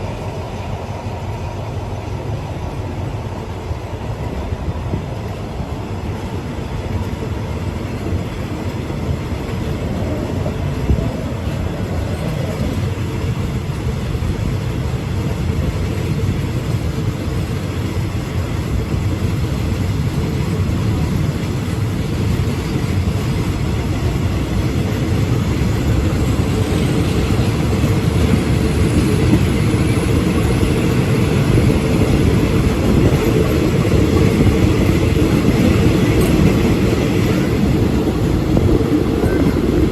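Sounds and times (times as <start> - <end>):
train rumbling: 0.0 - 39.9.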